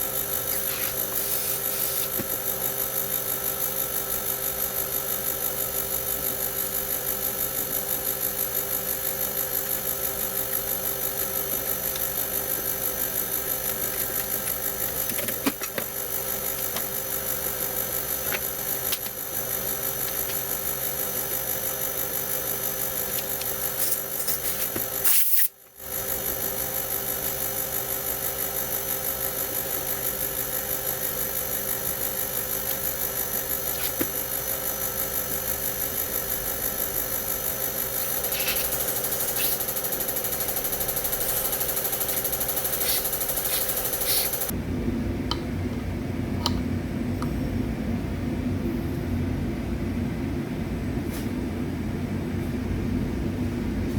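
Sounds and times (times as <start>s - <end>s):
steady machine tones: 25.8s - 45.6s
machinery droning: 28.3s - 49.2s.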